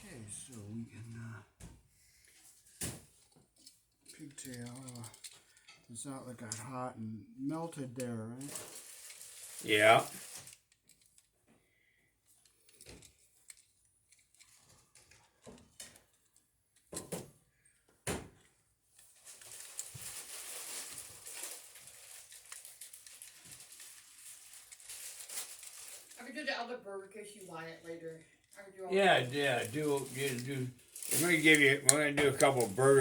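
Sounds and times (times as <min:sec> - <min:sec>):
faint rustling: 0:19.0 - 0:33.0.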